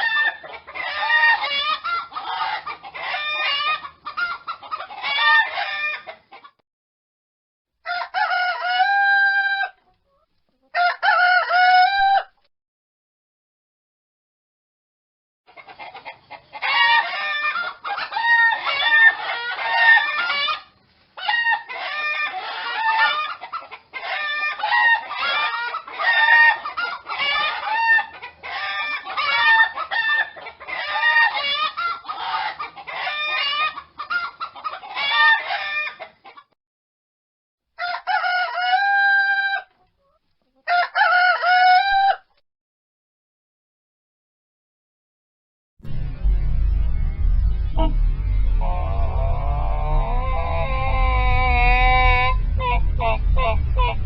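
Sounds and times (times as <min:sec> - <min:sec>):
chickens clucking: 0:00.0 - 0:06.6, 0:09.7 - 0:11.4, 0:15.5 - 0:36.6, 0:37.8 - 0:41.6
rooster crowing: 0:07.8 - 0:09.8, 0:10.8 - 0:12.4, 0:16.6 - 0:33.8, 0:37.8 - 0:39.7, 0:40.7 - 0:42.3, 0:47.8 - 0:54.0.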